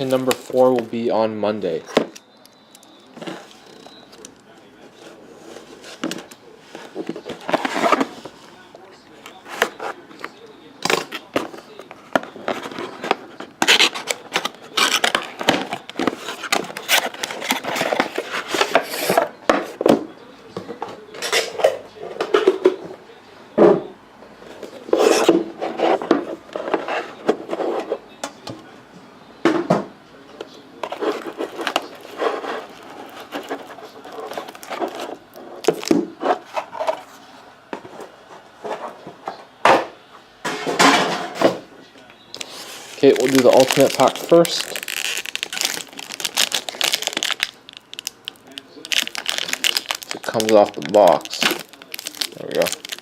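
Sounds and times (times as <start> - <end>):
tin and packaging being handled: 9.2 - 19.3, 30.4 - 37.1, 42.3 - 53.0.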